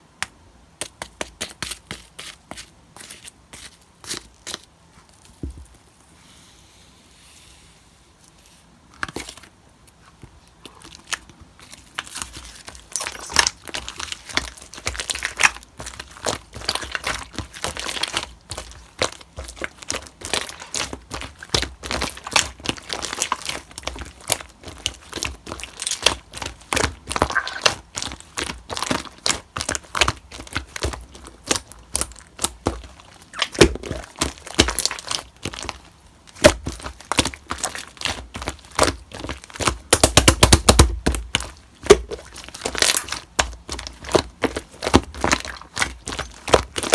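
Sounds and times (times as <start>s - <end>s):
slime squeezed by hand: 27.2s - 27.8s, 33.3s - 34.1s.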